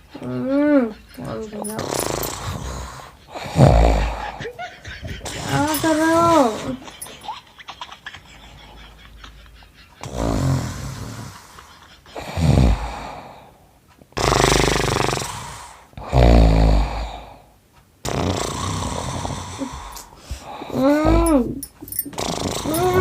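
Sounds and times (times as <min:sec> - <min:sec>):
man snoring loudly: 0:01.6 - 0:04.4, 0:10.0 - 0:11.5, 0:12.2 - 0:13.4, 0:14.2 - 0:23.0.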